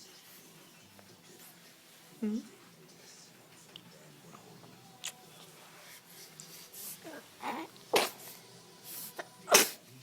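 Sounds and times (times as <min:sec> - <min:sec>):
baby sneezing: 0:07.0 - 0:08.3, 0:09.2 - 0:09.9.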